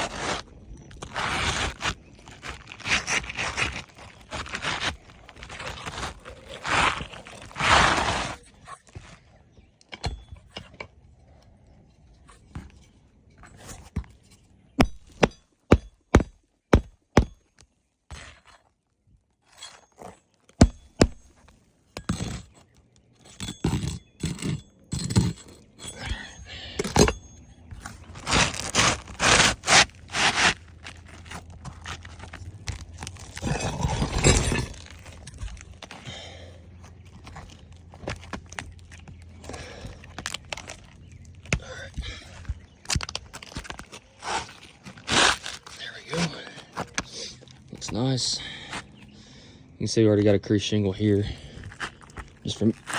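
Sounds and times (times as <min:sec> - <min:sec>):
shingles scraping and rustling: 0:00.0 - 0:09.4, 0:12.1 - 0:18.8, 0:19.4 - 0:48.0, 0:51.1 - 0:52.9
shingles knocking and tapping: 0:14.8 - 0:18.4, 0:20.5 - 0:21.4.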